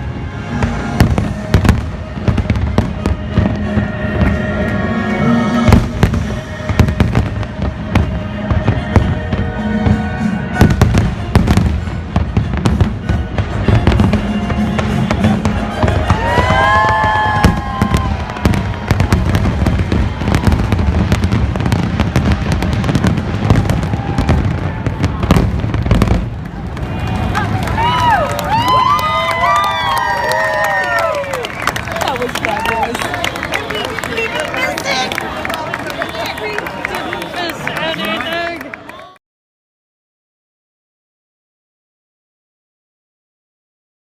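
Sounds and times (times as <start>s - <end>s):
music: 0.0s - 23.0s
fireworks bangs and crackles: 0.0s - 38.5s.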